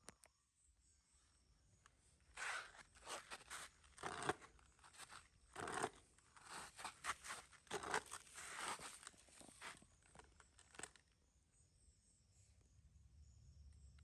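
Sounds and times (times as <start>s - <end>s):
scratchy rustling and scraping: 2.3s - 11.0s.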